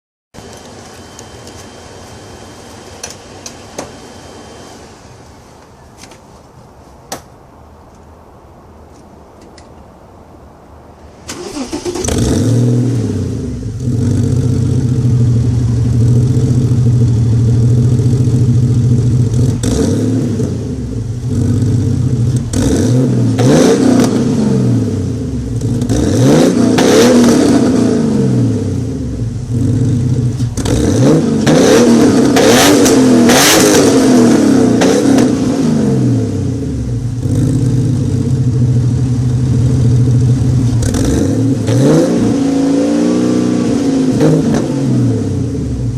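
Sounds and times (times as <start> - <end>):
racing car engine revving: 19.3 - 45.9.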